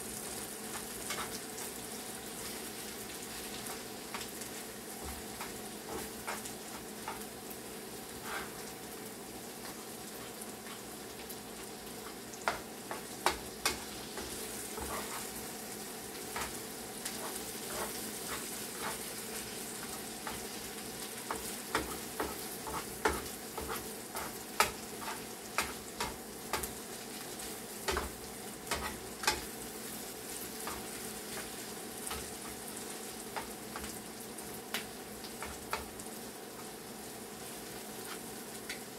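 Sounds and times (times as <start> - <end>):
chicken sizzling in oil: 0.0 - 38.9.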